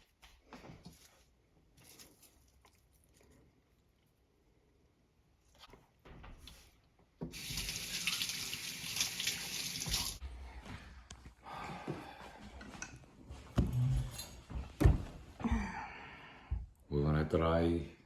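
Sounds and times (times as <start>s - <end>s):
tap running water into sink: 7.3s - 10.2s.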